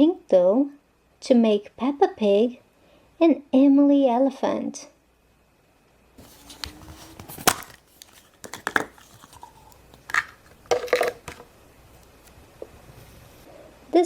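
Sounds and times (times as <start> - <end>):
plastic tubs clicking and rustling: 6.2 - 11.5.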